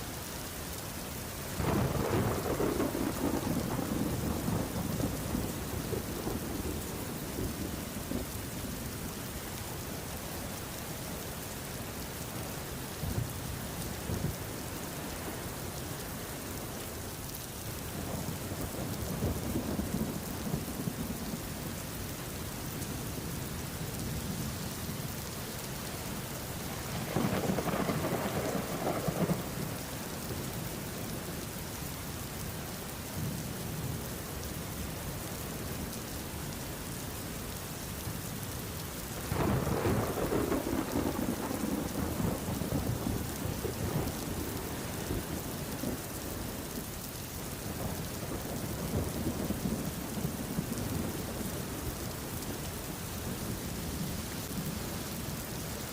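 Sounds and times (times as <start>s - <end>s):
steady rain: 0.0s - 55.9s
thunder rumbling: 1.6s - 8.4s, 26.7s - 29.9s, 39.2s - 46.6s.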